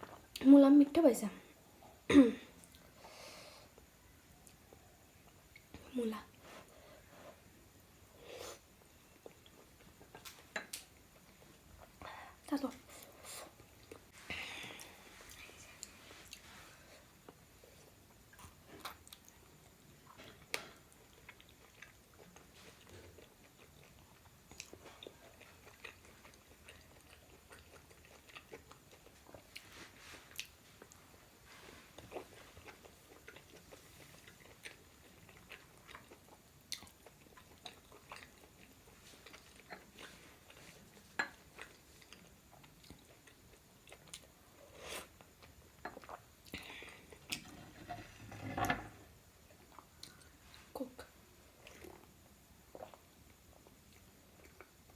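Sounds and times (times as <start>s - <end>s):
chewing and biting dumplings: 18.3s - 29.7s, 32.0s - 46.5s.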